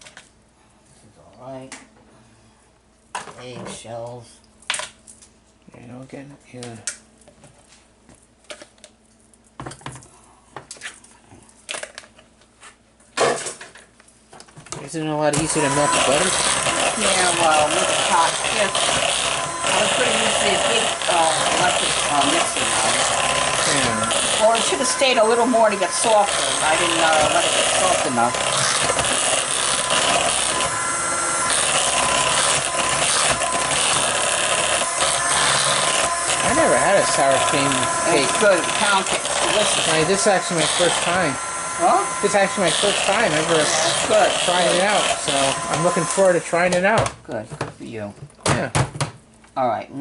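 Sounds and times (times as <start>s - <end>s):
electric mixer motor whine: 15.3s - 46.7s.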